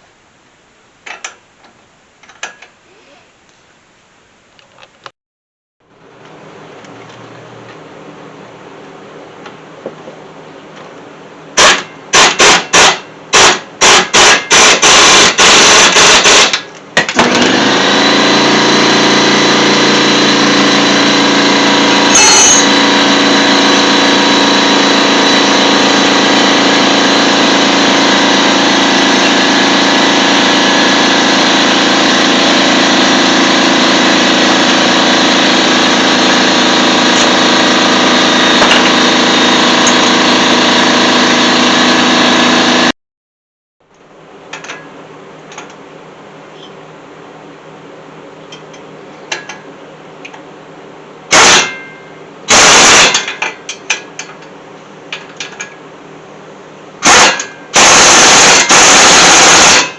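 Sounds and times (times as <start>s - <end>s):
air compressor running: 11.6s - 16.6s, 17.2s - 42.9s, 51.3s - 51.7s, 52.5s - 53.3s, 57.0s - 59.9s
impact wrench bursts: 11.6s - 42.4s, 51.3s - 51.8s, 52.5s - 54.0s, 57.0s - 59.9s.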